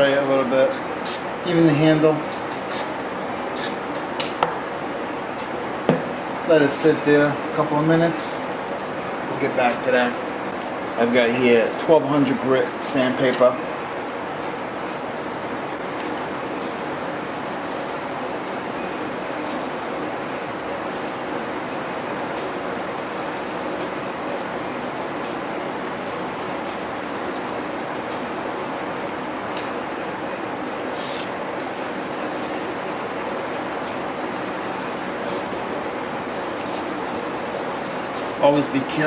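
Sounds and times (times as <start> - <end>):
sandpaper rubbing steel blade: 15.8 - 28.9, 31.0 - 35.7, 36.3 - 38.4.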